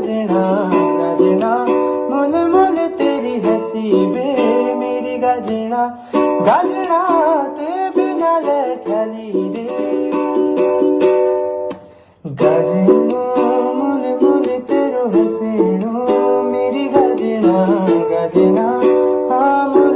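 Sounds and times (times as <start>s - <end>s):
song with plucked strings: 0.0s - 19.9s.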